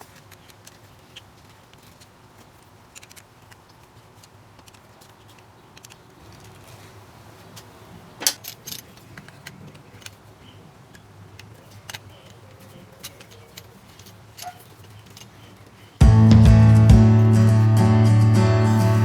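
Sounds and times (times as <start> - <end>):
small parts clicking and clinking: 0.0 - 6.7, 7.6 - 15.8.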